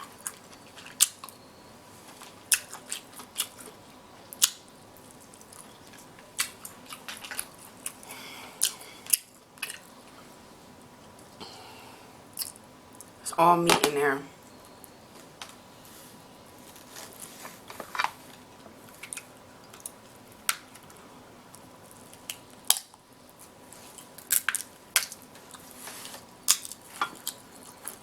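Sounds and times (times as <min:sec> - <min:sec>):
crab shells cracking: 0:04.4 - 0:09.9, 0:18.9 - 0:25.6, 0:26.4 - 0:28.0.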